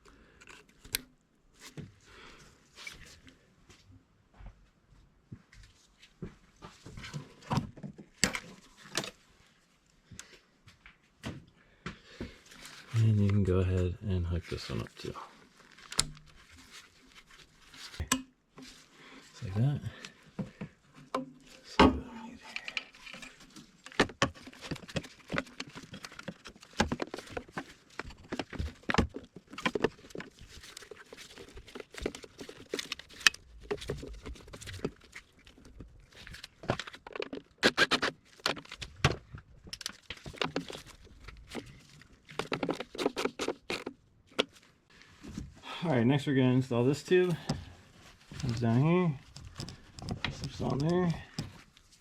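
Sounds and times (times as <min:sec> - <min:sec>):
hands handling plastic engine parts: 0:12.2 - 0:21.8, 0:22.4 - 0:45.6, 0:47.2 - 0:52.0.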